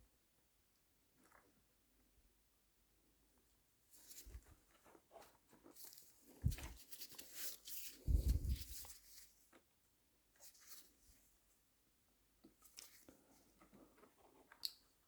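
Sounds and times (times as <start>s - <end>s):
plastic parts and wires rustling: 4.1s - 9.4s.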